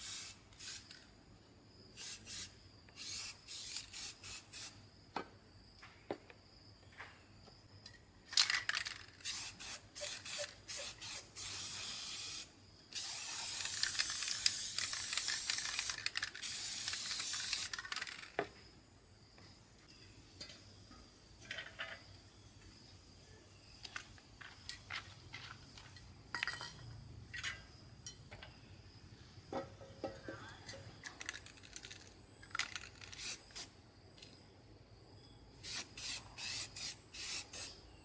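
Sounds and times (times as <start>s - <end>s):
pressurised spray hissing: 0.0s - 0.9s, 2.0s - 4.8s, 9.3s - 17.7s, 33.2s - 33.7s, 35.6s - 37.8s
parts clicking and knocking: 7.8s - 11.0s, 13.0s - 18.6s, 23.8s - 28.6s, 29.5s - 34.4s.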